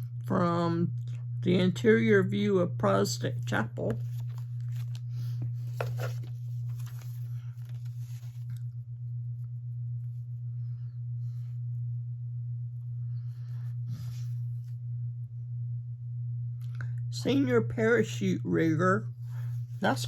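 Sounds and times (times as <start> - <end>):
steady low hum: 0.0 - 20.0
paper rustling: 3.9 - 8.6.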